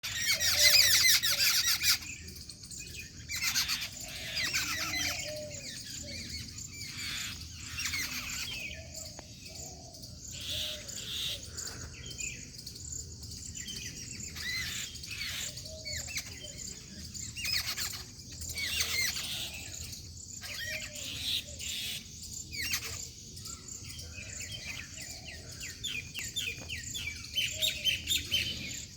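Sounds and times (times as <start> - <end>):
small birds chirping: 0.0 - 28.9.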